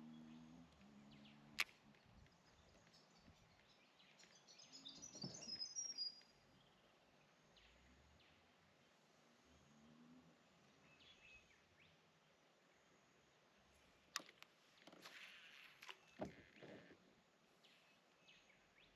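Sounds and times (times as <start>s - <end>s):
songbird singing high notes: 4.5s - 6.2s.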